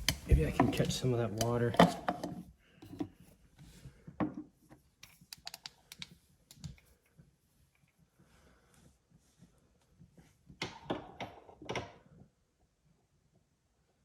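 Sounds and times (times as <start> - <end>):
cups clicking and knocking: 0.0 - 3.1.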